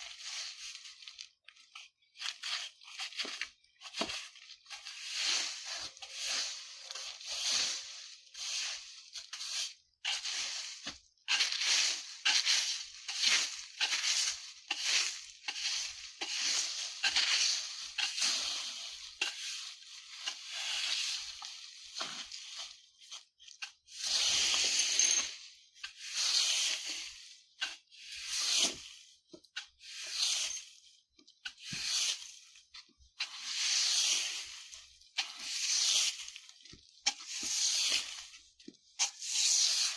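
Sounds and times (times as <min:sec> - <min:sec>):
broom sweeping dry leaves: 0:00.0 - 0:39.9.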